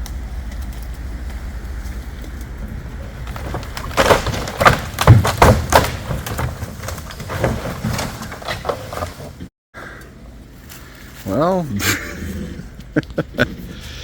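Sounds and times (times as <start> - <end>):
wood cracking and splintering: 0.0 - 9.5
thuds: 3.0 - 9.5.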